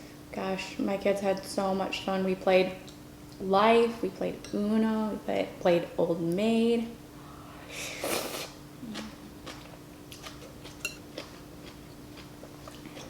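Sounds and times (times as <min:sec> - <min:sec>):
soft chewing: 0:08.8 - 0:13.0.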